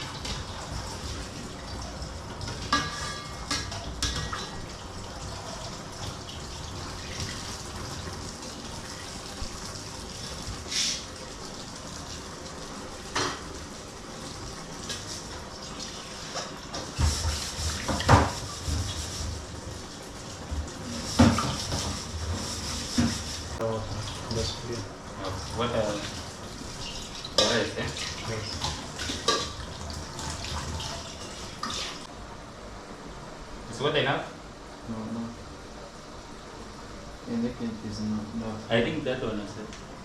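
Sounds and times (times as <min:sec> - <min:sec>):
pots and dishes clinking: 0:00.0 - 0:05.8, 0:13.1 - 0:13.5, 0:16.1 - 0:19.1, 0:20.5 - 0:24.5, 0:26.8 - 0:32.0
water pouring and splashing: 0:00.0 - 0:32.1.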